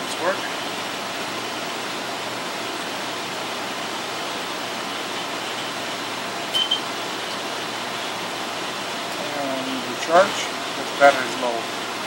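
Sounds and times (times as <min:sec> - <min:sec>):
high beeps: 0:06.5 - 0:06.9.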